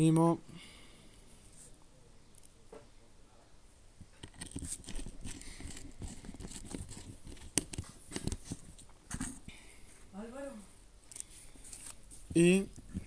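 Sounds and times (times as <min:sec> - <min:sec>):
plastic parts clicking and rattling: 0:04.1 - 0:09.4.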